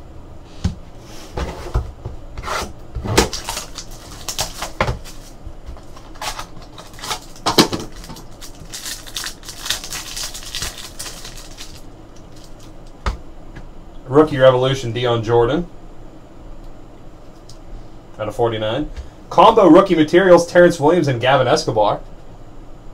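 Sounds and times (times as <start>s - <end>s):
cardboard and wrappers rustling: 3.2s - 12.7s.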